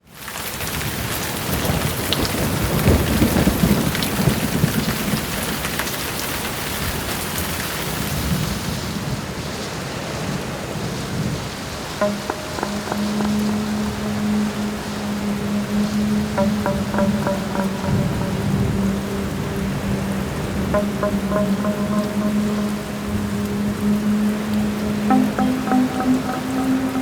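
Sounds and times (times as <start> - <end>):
heavy rain pelting down: 0.0 - 27.0
steady low tone: 12.0 - 27.0.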